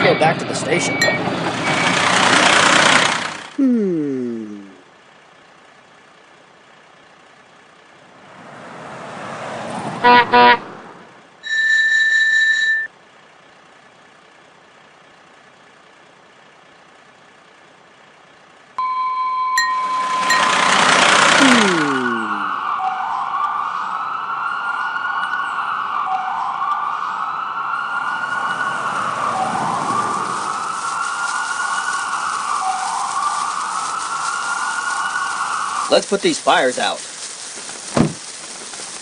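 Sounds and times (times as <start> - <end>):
short beep: 11.4 - 12.9, 18.8 - 20.5
toy siren wailing: 21.4 - 23.6, 27.8 - 36.2.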